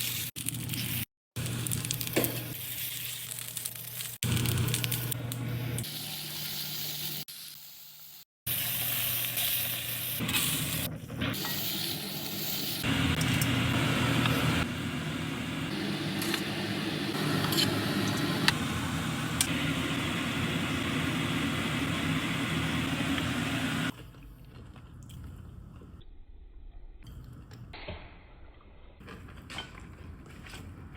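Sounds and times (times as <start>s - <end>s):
noodles sizzling in a pan: 0.0s - 23.9s.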